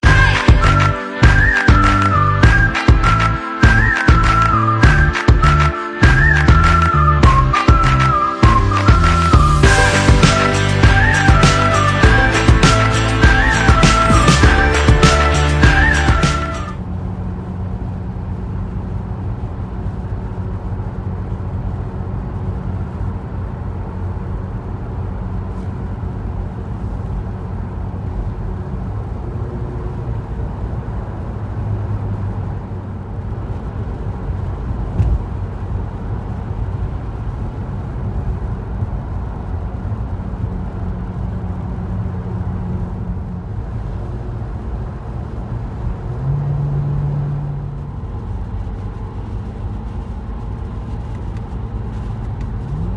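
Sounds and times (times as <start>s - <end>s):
car road and engine rumble: 0.0s - 52.9s
low hums: 0.1s - 52.9s
sharp knock: 13.8s - 16.7s, 35.0s - 35.4s.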